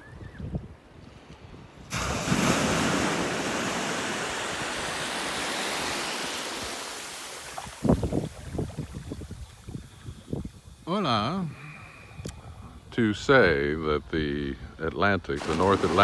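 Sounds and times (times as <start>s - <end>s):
wind buffeting microphone: 0.0s - 6.7s, 7.6s - 10.9s, 11.9s - 16.0s
wave breaking and washing: 1.9s - 9.6s, 15.4s - 16.0s.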